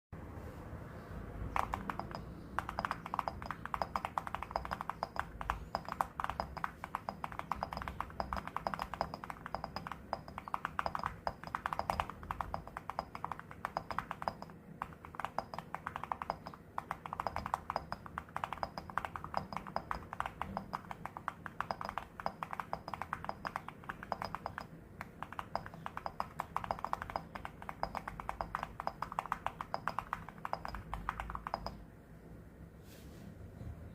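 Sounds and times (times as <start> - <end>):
mechanical keyboard typing: 1.5 - 31.8.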